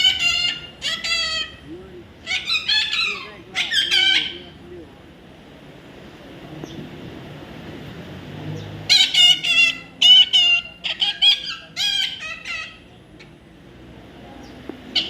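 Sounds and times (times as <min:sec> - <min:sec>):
parrot harsh calls: 0:00.0 - 0:04.6, 0:08.9 - 0:12.9.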